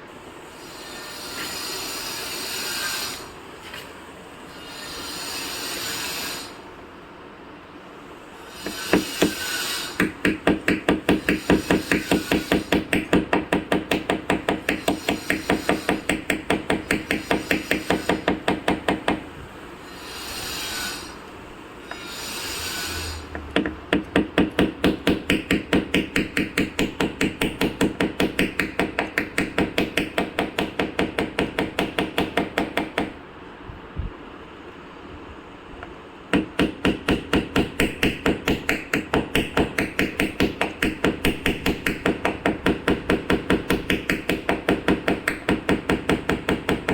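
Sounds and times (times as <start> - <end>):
hammer tapping on metal tools: 10.0 - 19.2, 23.3 - 33.2, 36.3 - 46.9.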